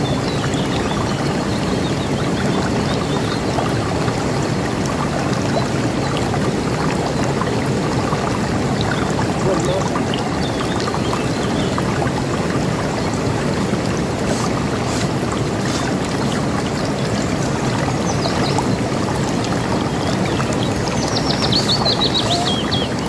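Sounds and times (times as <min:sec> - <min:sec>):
river water rushing: 0:00.0 - 0:23.0
birds chirping: 0:08.8 - 0:11.9, 0:14.3 - 0:23.0.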